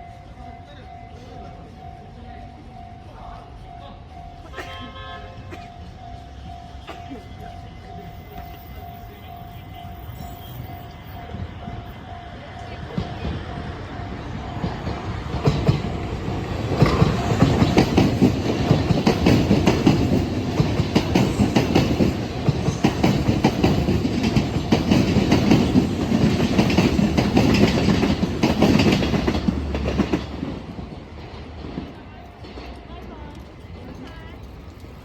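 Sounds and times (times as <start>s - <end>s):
train wheels clacking over rail joints: 14.5s - 35.0s.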